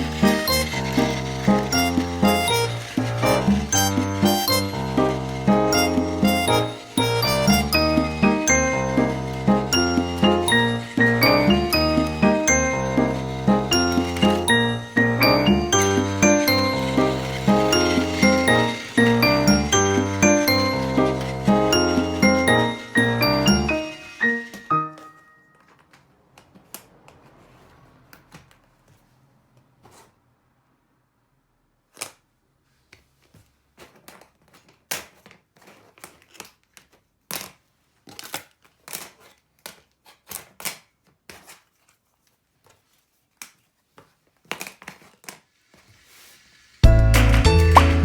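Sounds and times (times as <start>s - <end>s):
plastic toy track pieces clicking: 0.0s - 25.2s
music: 0.0s - 25.6s, 46.8s - 48.0s.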